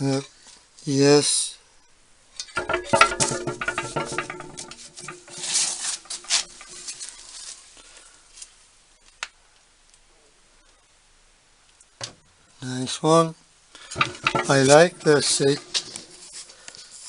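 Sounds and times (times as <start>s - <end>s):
scraping rustle: 2.5s - 8.6s, 13.9s - 17.0s.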